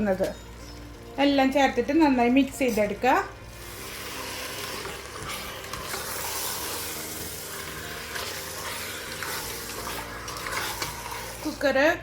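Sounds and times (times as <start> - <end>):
meat sizzling in a pot: 0.0 - 12.0
spoon scraping a pot: 3.5 - 11.8.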